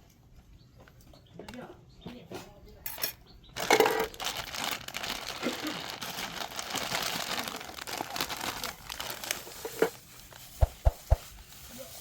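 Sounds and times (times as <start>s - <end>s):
crinkling and rustling handling noise: 2.9s - 12.0s.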